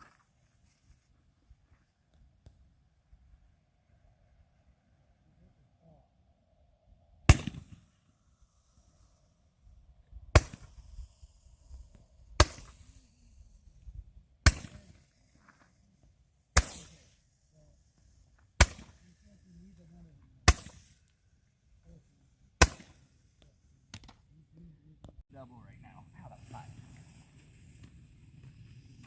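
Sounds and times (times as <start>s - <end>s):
firework bangs: 16.6s - 17.2s.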